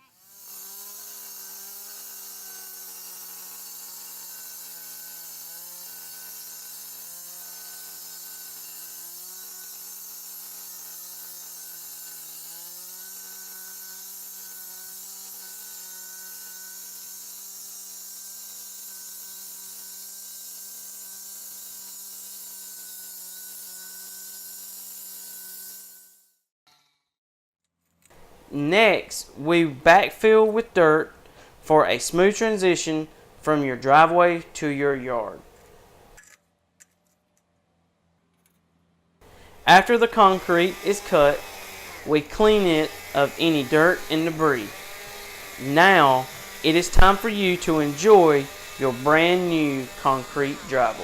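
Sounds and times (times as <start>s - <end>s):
concrete saw cutting: 0.0s - 26.3s, 39.2s - 51.0s.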